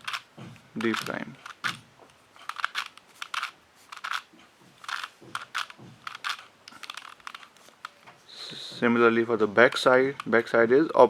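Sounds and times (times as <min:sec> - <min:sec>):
plastic puzzle cube clicking: 0:00.0 - 0:01.8, 0:02.4 - 0:08.0, 0:09.7 - 0:10.4.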